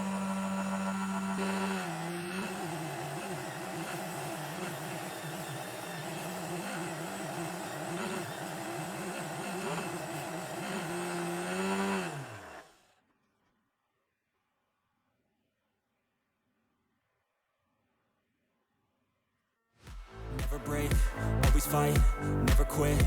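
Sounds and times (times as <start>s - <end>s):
sanding machine motor running: 0.0s - 12.8s.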